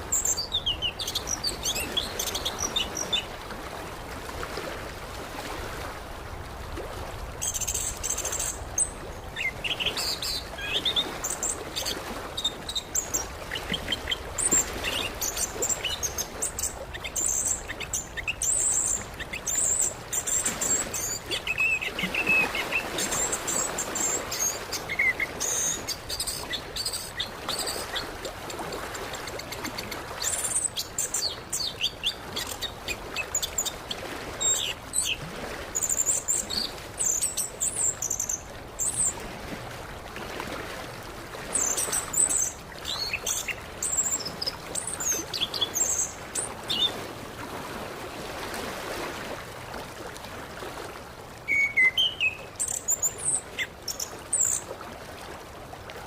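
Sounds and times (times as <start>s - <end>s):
thrush singing chirps and whistles: 51.5s - 53.1s.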